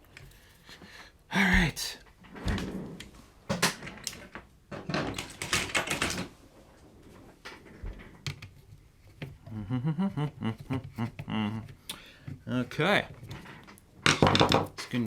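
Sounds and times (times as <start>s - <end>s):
metal parts clicking and clattering: 3.5s - 6.3s.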